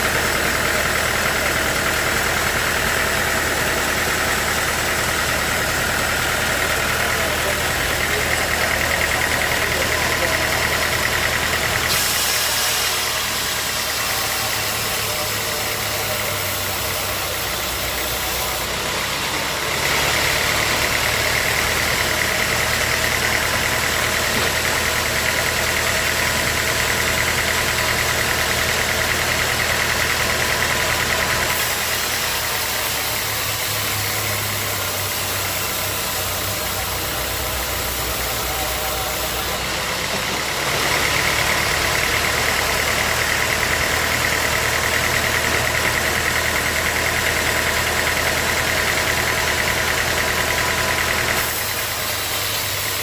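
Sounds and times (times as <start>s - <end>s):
sawmill motor drone: 0.0s - 53.0s
high machine whine: 29.0s - 53.0s.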